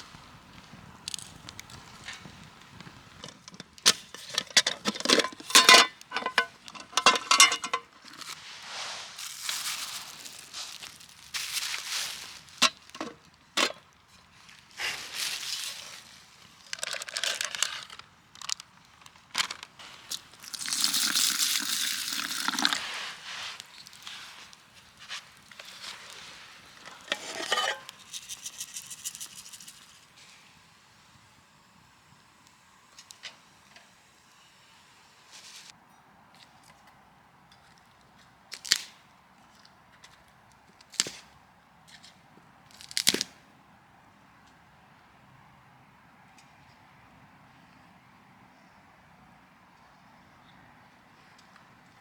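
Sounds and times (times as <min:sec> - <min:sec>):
crinkling and rustling objects: 0:00.0 - 0:30.5.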